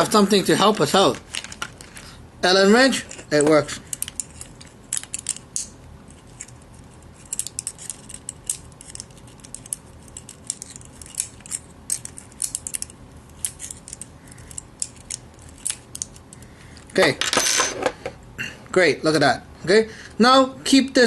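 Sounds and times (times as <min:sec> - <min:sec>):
metallic clicks and scrapes: 0:03.1 - 0:16.4.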